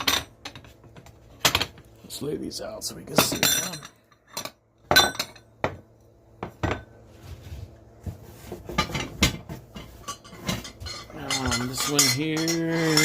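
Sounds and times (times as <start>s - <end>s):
metal tableware clinking: 3.2s - 5.5s, 9.8s - 13.0s.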